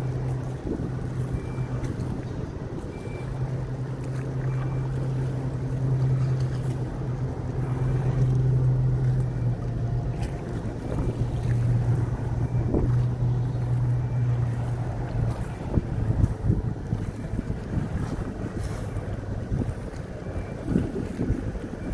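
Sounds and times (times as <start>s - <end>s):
large engine humming: 0.0s - 21.9s.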